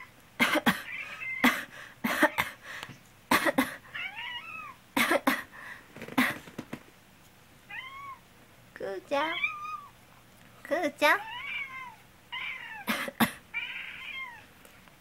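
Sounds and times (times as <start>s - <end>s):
person coughing: 0.4s - 2.6s, 3.3s - 3.8s, 5.0s - 5.5s, 12.9s - 13.4s
cat meowing: 4.0s - 4.8s, 7.7s - 8.2s, 9.3s - 10.0s, 11.2s - 12.9s, 13.5s - 14.5s.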